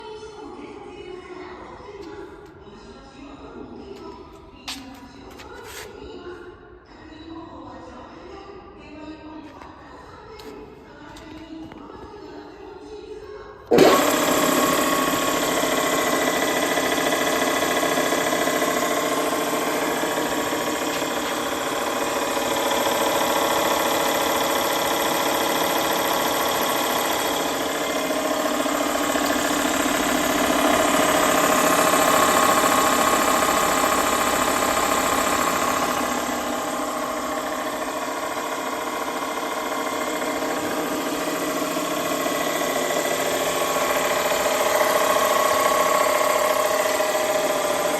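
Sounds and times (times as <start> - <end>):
cut-off saw whining: 13.7 - 47.9.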